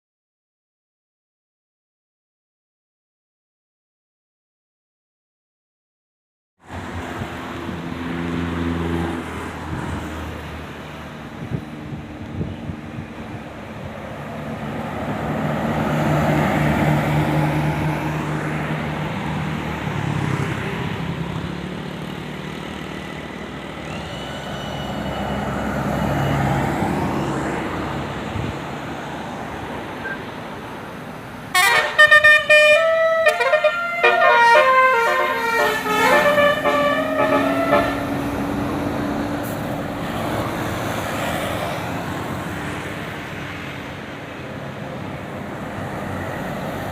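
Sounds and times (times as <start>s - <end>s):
road traffic passing: 6.6s - 46.9s
musical bus air horn tune: 31.5s - 38.6s.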